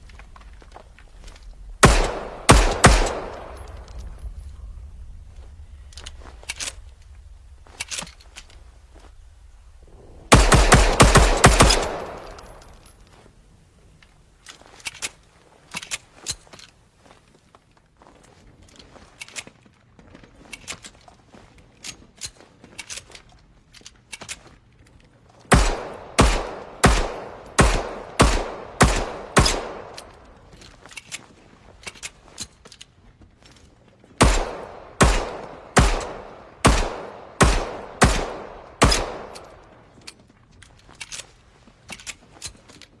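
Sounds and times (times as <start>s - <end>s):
pistol shots: 1.8s - 3.9s, 10.3s - 12.6s, 25.5s - 30.2s, 34.2s - 39.6s.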